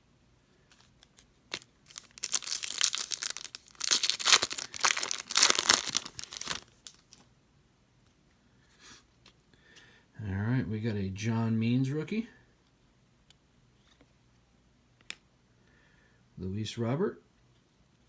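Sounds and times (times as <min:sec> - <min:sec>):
foil wrapper tearing and crinkling: 0:01.5 - 0:07.2.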